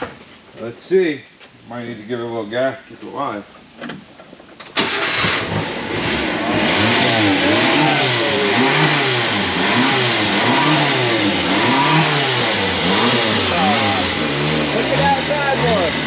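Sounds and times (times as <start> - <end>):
truck engine revving: 4.8 - 16.0.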